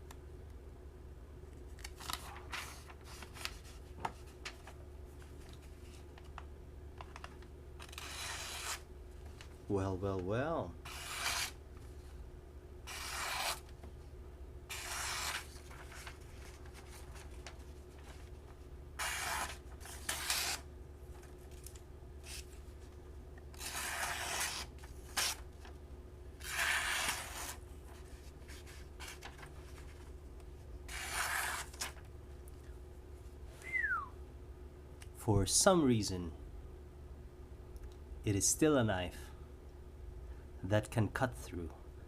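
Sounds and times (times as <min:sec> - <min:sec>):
knife slicing paper: 0:07.8 - 0:08.9, 0:10.8 - 0:11.6, 0:12.9 - 0:13.7, 0:14.7 - 0:17.3, 0:19.0 - 0:20.6, 0:23.6 - 0:25.4, 0:26.4 - 0:27.6, 0:30.9 - 0:32.0.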